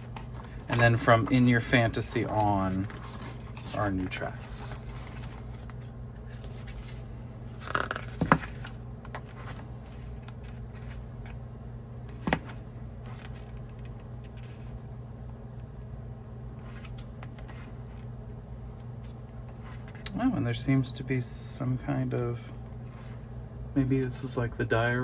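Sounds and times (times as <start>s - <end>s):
paper rustling and scraping: 0.0s - 11.4s, 12.1s - 14.7s, 16.6s - 18.1s, 19.0s - 20.1s
steady low hum: 0.0s - 25.0s.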